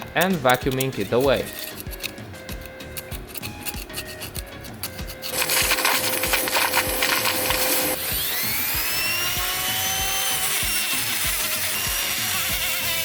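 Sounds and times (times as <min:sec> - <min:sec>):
rotary tool grinding metal: 0:00.0 - 0:13.0
music with a steady beat: 0:01.9 - 0:12.8
electric motor whining: 0:05.2 - 0:13.0.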